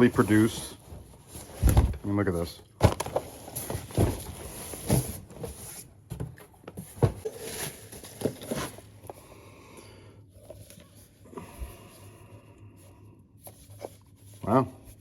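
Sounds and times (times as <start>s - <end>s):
packaging rustling: 2.8s - 5.9s, 6.8s - 9.2s.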